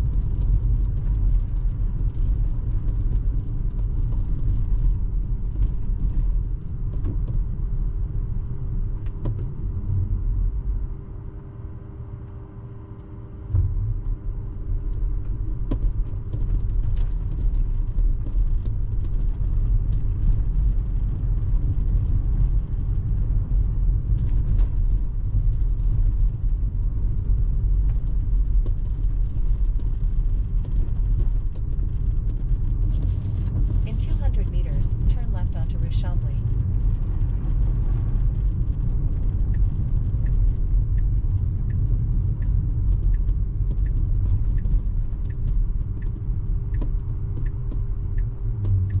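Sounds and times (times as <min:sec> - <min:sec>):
tyre and road rumble: 0:13.5 - 0:49.0.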